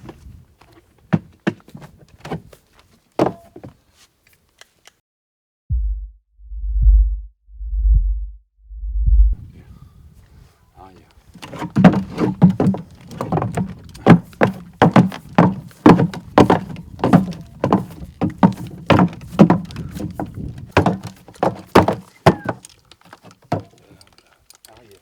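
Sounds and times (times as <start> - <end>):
dull knocks and thuds: 11.4 - 23.7.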